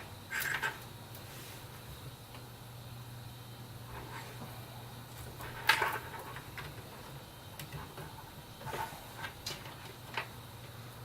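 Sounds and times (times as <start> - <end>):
steady low hum: 0.0 - 11.0
cables rustling: 3.8 - 11.0.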